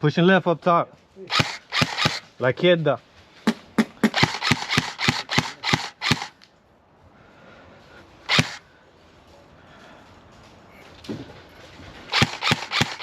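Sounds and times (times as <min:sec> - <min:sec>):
airsoft gun shots: 0:01.3 - 0:02.3, 0:04.0 - 0:06.4, 0:08.3 - 0:08.6, 0:12.1 - 0:13.0.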